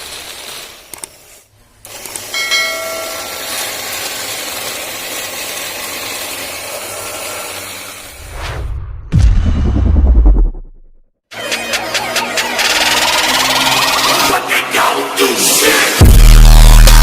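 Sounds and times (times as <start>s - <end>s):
machine hissing: 0.0s - 8.4s
high tones: 2.3s - 3.8s.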